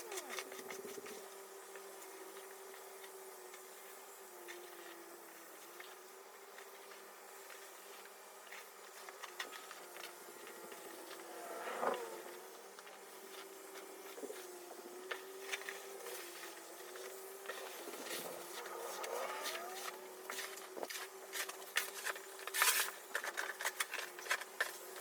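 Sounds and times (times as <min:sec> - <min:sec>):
snow blower motor humming: 0:00.0 - 0:25.0
sharp clicks and scrapes: 0:17.0 - 0:25.0.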